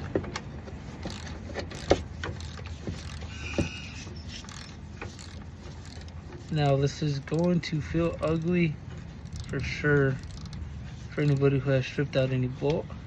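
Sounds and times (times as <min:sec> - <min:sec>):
hand ratchet clicking: 0:00.0 - 0:12.8
brief squeak: 0:03.2 - 0:04.8.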